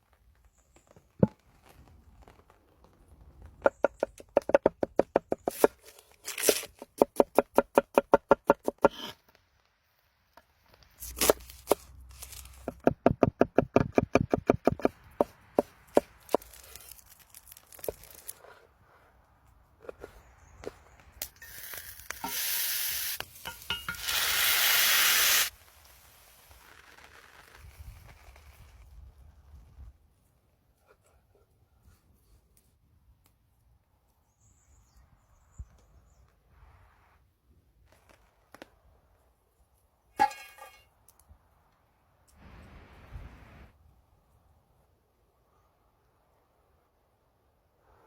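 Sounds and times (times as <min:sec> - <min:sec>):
food sizzling in a pan: 0:21.4 - 0:26.2.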